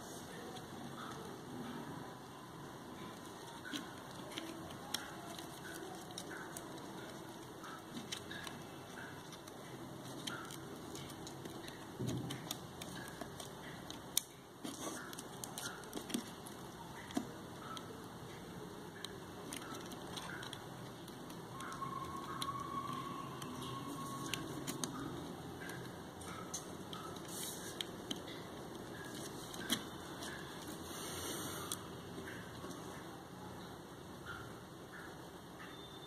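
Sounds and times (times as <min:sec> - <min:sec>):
small clicks and taps: 0:03.0 - 0:30.8.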